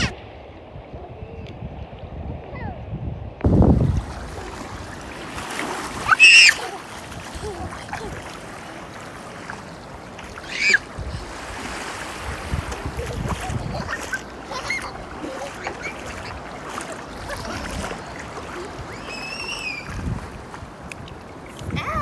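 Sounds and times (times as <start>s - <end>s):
wind on microphone: 0.0s - 22.0s
sea water sloshing and splashing: 3.5s - 22.0s
high-pitched cries: 6.0s - 6.8s, 10.4s - 10.9s, 13.4s - 16.3s, 18.6s - 20.0s.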